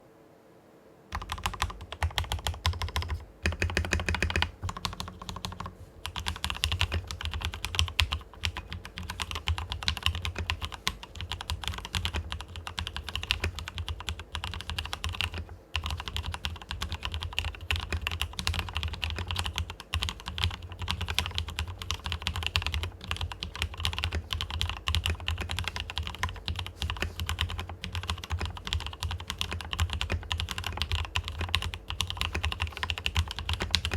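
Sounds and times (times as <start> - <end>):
fast typing on mechanical keyboard: 1.1 - 33.9.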